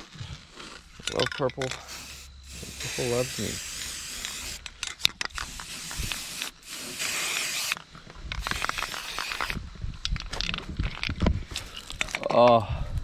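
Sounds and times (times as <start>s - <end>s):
spray paint can hissing: 1.8s - 4.6s, 5.3s - 7.8s, 8.4s - 9.6s.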